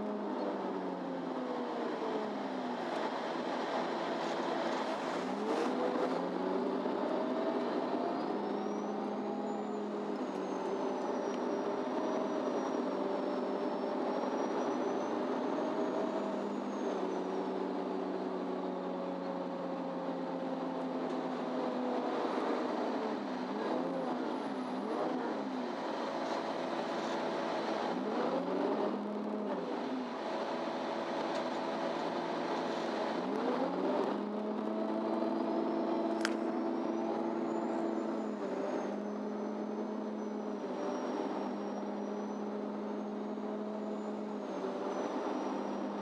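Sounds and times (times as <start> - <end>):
diesel bus engine drone: 0.0 - 46.0.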